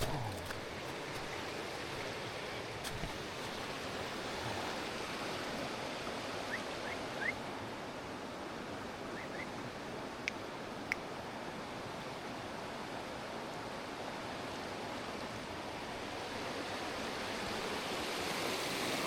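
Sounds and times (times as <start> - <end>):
stream water flowing: 0.0 - 19.0.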